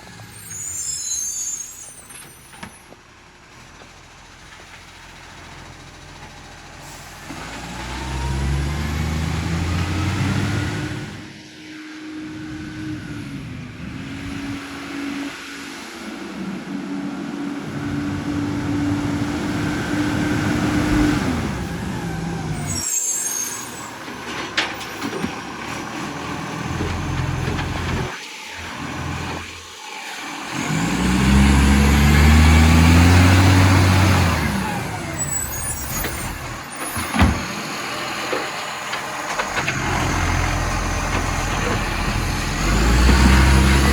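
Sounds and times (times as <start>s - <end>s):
air brake hisses: 0.1s - 2.8s, 22.6s - 24.1s
truck engine revving: 5.2s - 43.9s.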